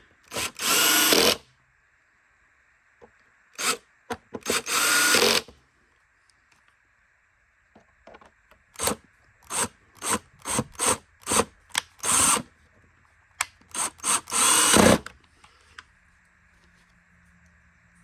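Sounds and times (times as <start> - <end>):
power screwdriver running: 0.3 - 1.4, 3.6 - 3.8, 4.4 - 5.5, 8.8 - 12.5, 13.7 - 15.1.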